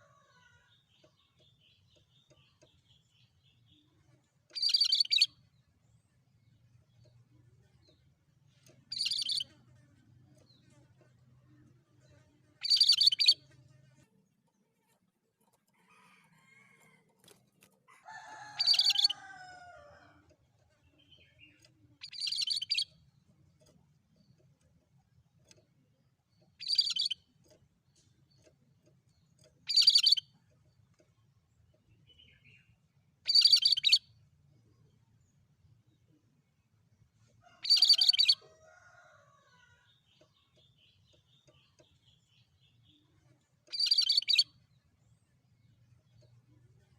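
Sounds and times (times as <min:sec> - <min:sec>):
bird chirping phrases: 0:00.0 - 0:05.4, 0:08.9 - 0:09.9, 0:12.0 - 0:13.5, 0:20.8 - 0:23.2, 0:26.4 - 0:27.3, 0:29.2 - 0:30.3, 0:31.9 - 0:34.0, 0:39.6 - 0:46.8.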